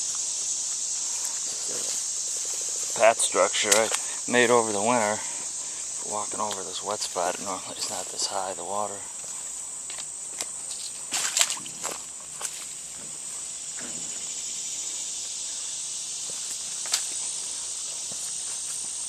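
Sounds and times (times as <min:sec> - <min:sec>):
crunching footsteps: 0:00.0 - 0:19.0
high-pitched insect chorus: 0:00.0 - 0:19.0
sharp snap: 0:03.6 - 0:04.0.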